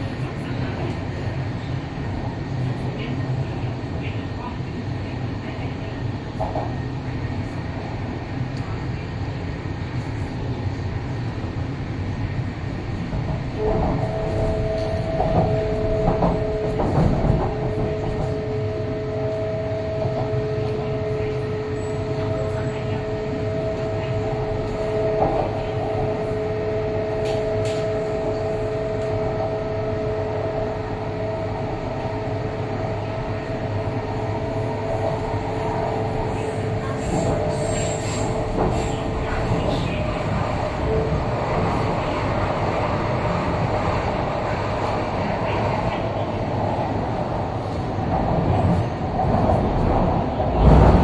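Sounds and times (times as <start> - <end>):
train wheels rumbling: 12.4 - 51.0.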